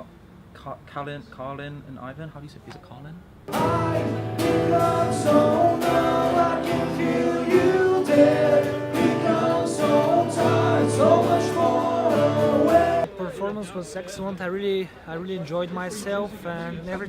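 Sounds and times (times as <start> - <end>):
person singing: 3.5 - 13.1
strummed guitar chords: 3.5 - 13.1.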